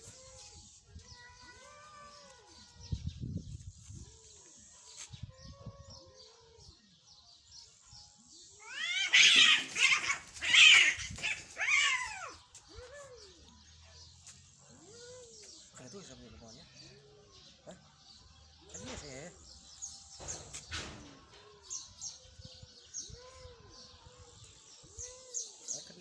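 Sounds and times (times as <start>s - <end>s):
cats screeching fighting: 8.6s - 13.3s
cats yowling: 8.6s - 13.4s.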